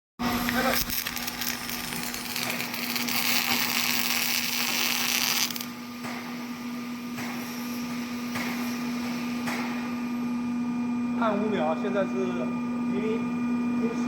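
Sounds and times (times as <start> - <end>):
welding machine electrical hum: 0.2 - 14.0
welding arc crackling: 0.3 - 5.8.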